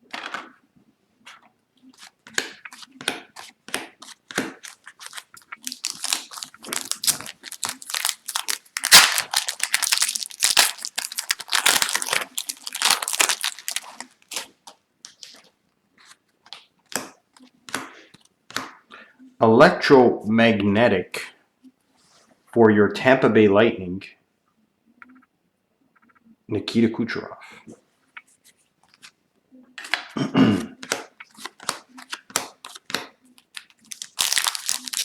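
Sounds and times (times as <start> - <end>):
foil wrapper crinkling and tearing: 4.1 - 15.4, 31.3 - 35.0.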